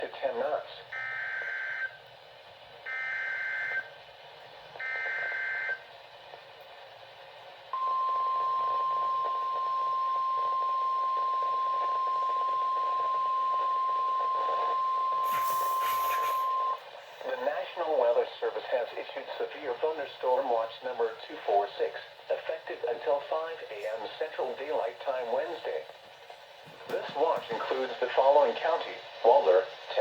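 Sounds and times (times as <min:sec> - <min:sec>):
digital data tone bursts: 0:14.6 - 0:16.8.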